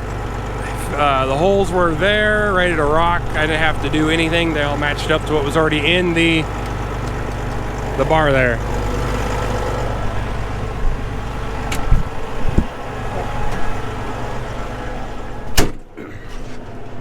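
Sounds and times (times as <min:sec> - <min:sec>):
clunks: 0:00.0 - 0:17.0
tractor engine idling: 0:00.0 - 0:17.0
door slamming: 0:15.5 - 0:16.0.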